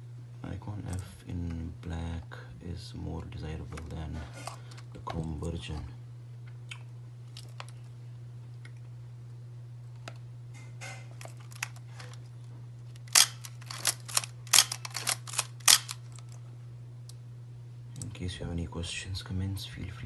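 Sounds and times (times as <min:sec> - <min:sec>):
camera mechanical clicks: 0:13.0 - 0:16.0.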